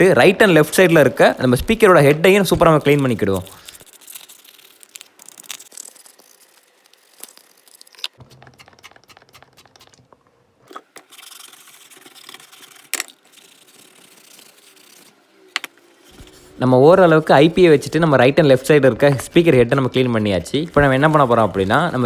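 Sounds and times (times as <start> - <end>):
scrubbing on plastic: 20.5 - 22.0.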